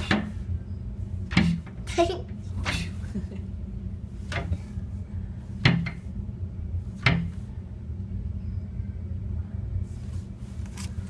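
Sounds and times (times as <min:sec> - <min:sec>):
steady low hum: 0:00.0 - 0:11.0
sharp knocks: 0:05.6 - 0:06.0, 0:07.0 - 0:07.4.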